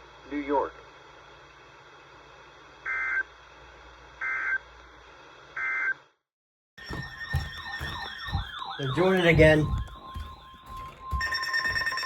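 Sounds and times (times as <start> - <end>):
digital data tone bursts: 6.8 - 12.0.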